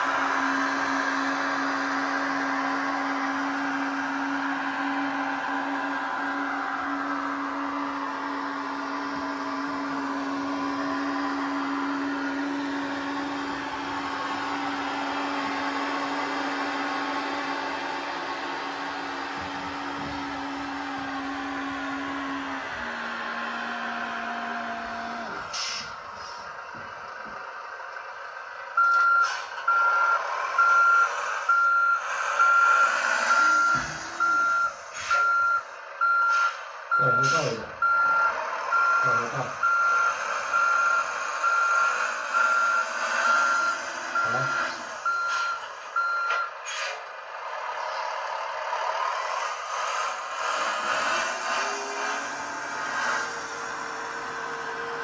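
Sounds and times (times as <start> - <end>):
high reversing beeps: 0.1 - 26.4, 28.8 - 46.9
reverse-warning beep: 28.8 - 46.5
toy truck motor whirring: 49.0 - 55.0.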